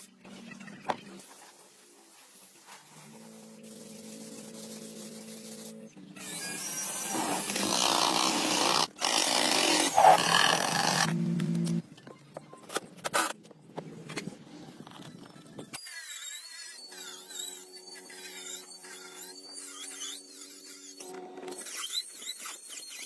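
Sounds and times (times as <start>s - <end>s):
power tool running: 6.2s - 11.8s.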